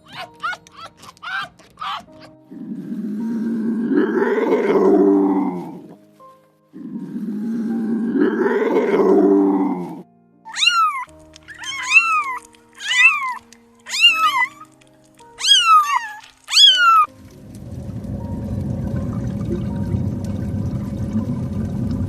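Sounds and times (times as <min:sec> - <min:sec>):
low growl: 0:02.5 - 0:06.0, 0:06.7 - 0:10.1, 0:17.3 - 0:22.0
cat meowing: 0:10.5 - 0:14.8, 0:15.4 - 0:17.1
rushing noise: 0:17.2 - 0:22.0.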